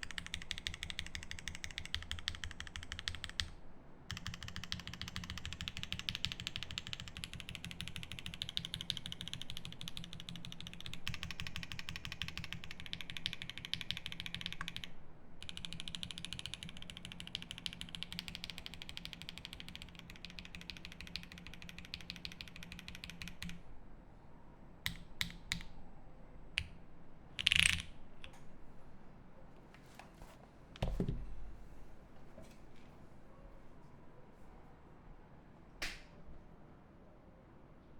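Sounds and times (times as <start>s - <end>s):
fast typing on mechanical keyboard: 0.0s - 23.6s, 27.4s - 27.9s.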